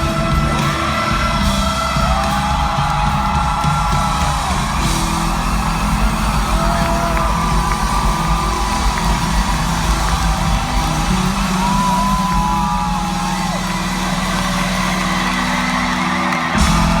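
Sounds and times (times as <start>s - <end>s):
live band playing ballad: 0.0s - 17.0s.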